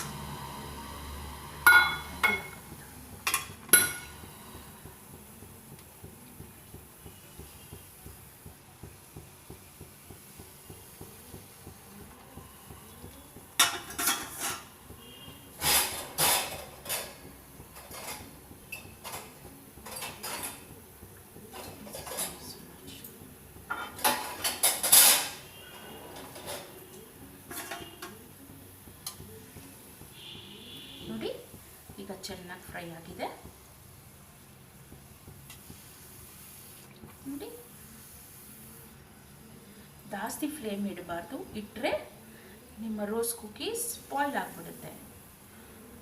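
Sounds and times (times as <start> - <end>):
oil frying: 0.0 - 42.0
metal utensils clinking on pan: 3.2 - 4.2, 13.6 - 14.7, 15.6 - 20.7, 23.7 - 25.4, 27.5 - 28.2.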